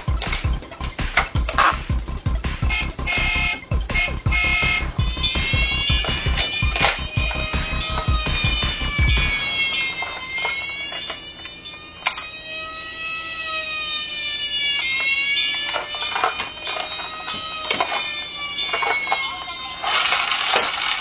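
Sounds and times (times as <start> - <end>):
toy electronic siren wailing: 0.0 - 21.0
plastic toy clicks: 6.0 - 8.1, 9.6 - 12.3, 14.8 - 21.0.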